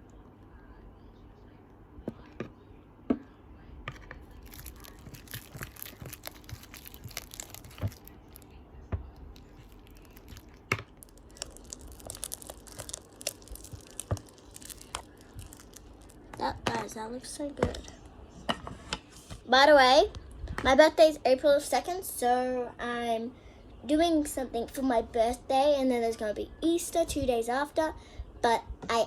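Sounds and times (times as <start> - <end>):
sticky slime crackling: 3.9 - 17.1.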